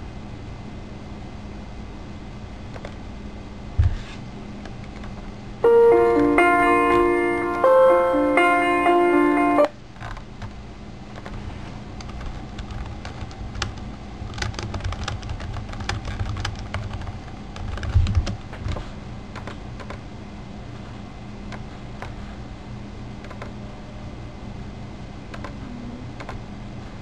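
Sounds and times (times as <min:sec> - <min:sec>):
low electrical hum: 0:00.0 - 0:27.0
keyboard typing: 0:12.0 - 0:20.0, 0:26.2 - 0:26.4.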